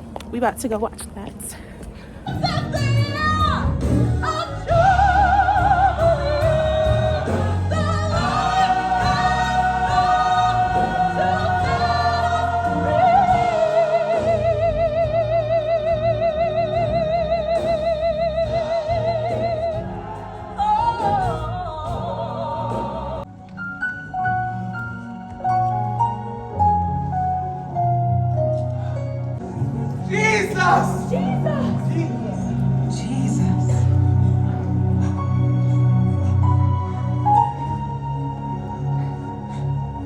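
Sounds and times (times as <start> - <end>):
gospel singing voice: 2.3 - 23.3, 30.0 - 35.2
live band accompaniment: 2.6 - 23.2.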